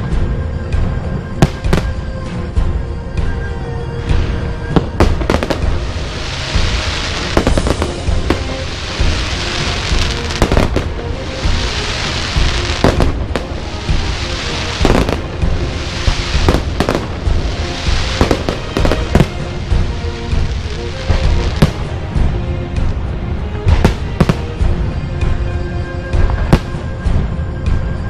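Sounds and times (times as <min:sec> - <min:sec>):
hissing firework crackle: 0:05.0 - 0:22.9.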